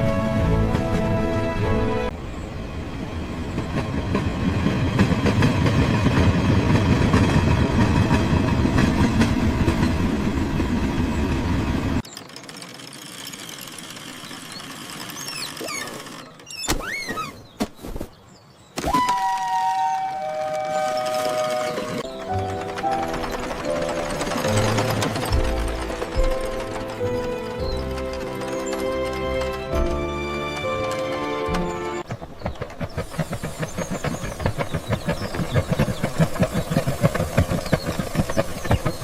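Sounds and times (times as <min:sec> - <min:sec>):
train rumbling on track: 0:00.0 - 0:16.3, 0:19.5 - 0:39.0
train horn: 0:19.5 - 0:22.0
train wheel squeals: 0:19.9 - 0:30.0.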